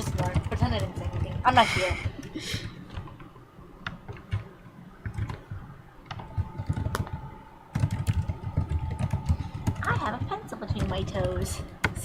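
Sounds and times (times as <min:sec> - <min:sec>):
keyboard key clicks: 0:03.8 - 0:09.9.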